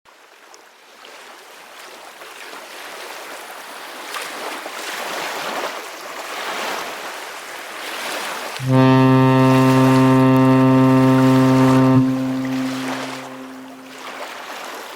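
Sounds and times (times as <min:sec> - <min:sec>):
sea waves washing in: 0:08.6 - 0:14.2.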